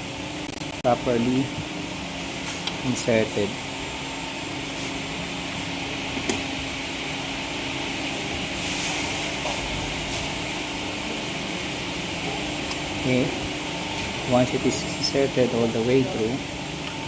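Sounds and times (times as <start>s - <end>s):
mechanical hum and hiss: 0.0s - 17.0s.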